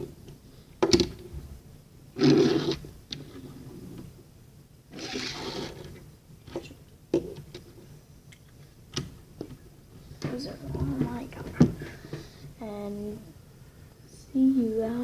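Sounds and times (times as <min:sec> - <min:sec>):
toy cars rustling and scraping: 0:02.2 - 0:04.0, 0:04.9 - 0:06.6.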